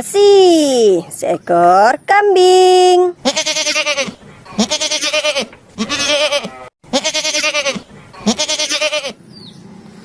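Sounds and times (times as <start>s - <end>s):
goat bleating: 3.2s - 9.2s.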